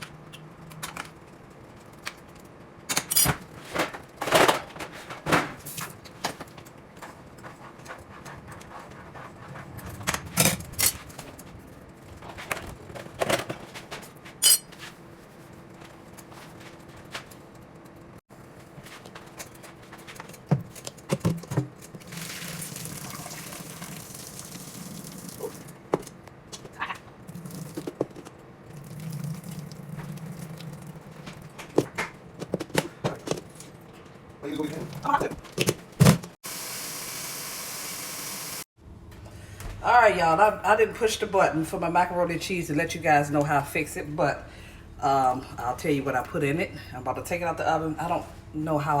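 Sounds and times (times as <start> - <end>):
dishes and utensils clinking: 14.4 - 14.8.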